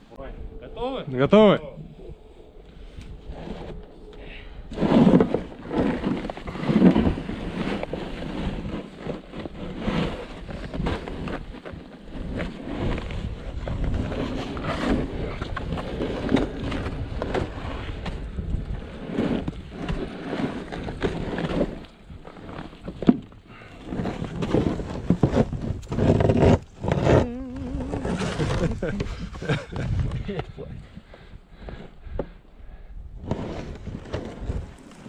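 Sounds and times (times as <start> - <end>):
wind buffeting microphone: 0.0 - 8.8, 12.2 - 20.1, 24.9 - 34.8
rustles: 1.8 - 32.0.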